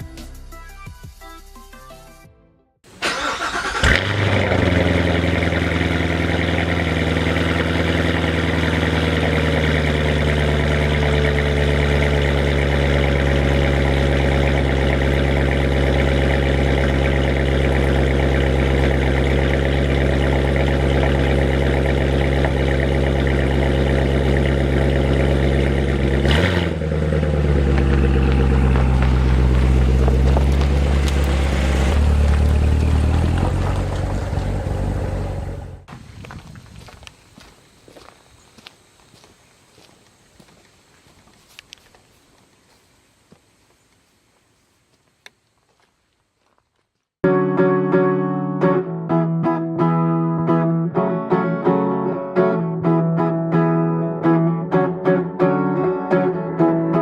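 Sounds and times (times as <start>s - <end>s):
car engine starting and idling: 2.9s - 35.9s.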